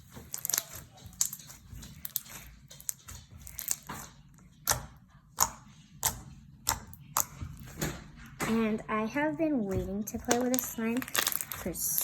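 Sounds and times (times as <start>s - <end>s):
slime clicking and popping: 0.3s - 7.8s.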